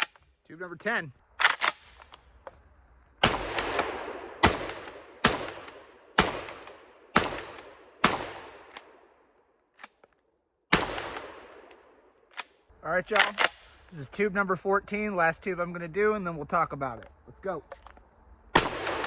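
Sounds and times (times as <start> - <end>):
shotgun pump clicks: 1.4 - 2.6, 10.8 - 13.7
shotgun blasts echoing: 3.2 - 9.1, 10.7 - 11.9, 18.6 - 19.0.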